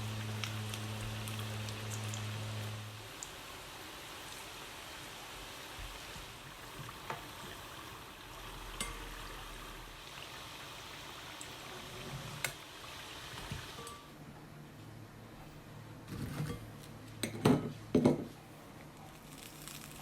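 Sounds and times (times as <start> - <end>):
food sizzling in hot oil: 0.0 - 14.1, 19.3 - 20.0.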